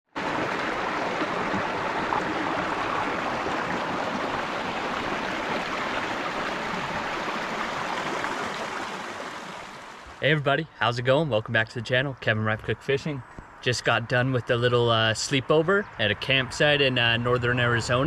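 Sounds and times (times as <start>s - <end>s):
water rushing over rocks: 0.1s - 10.2s.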